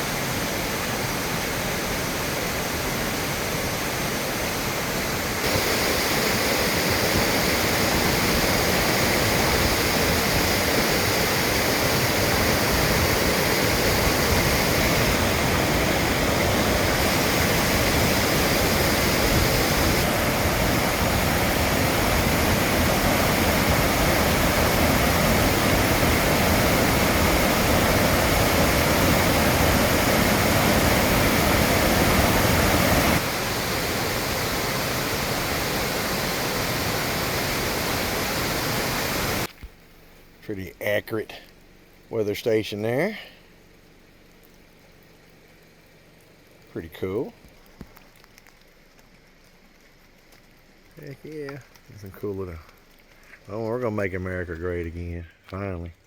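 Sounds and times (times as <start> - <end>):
flowing water rushing: 0.0 - 39.5.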